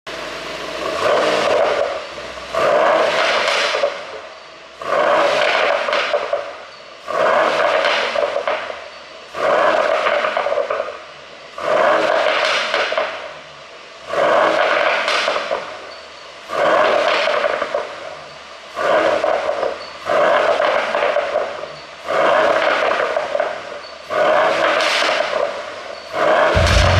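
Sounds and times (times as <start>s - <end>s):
engine revving in blips: 26.4s - 26.9s
exhaust pops and crackle: 26.5s - 26.9s.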